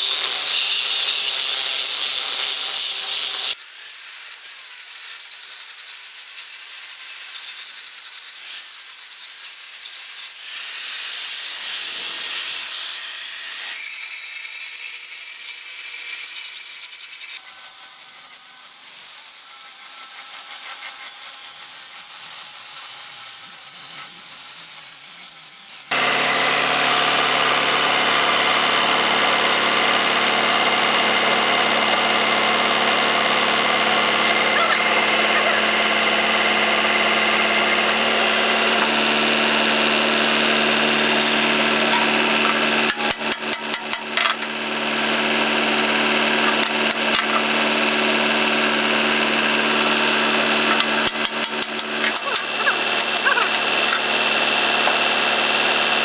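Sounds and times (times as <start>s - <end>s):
motor running with constant tones: 0.0s - 56.0s.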